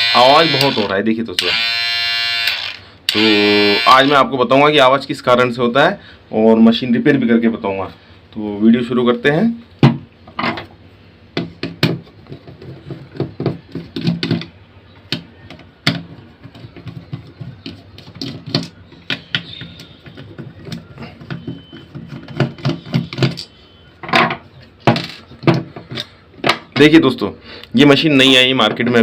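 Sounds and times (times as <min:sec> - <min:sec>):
hair trimmer buzzing: 0:00.0 - 0:04.2.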